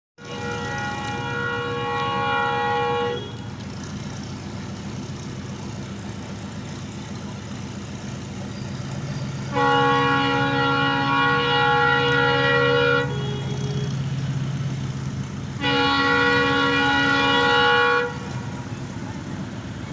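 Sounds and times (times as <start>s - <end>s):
train horn blast: 0.2s - 3.5s, 9.4s - 14.4s, 15.5s - 18.6s
train rumbling: 0.2s - 19.9s.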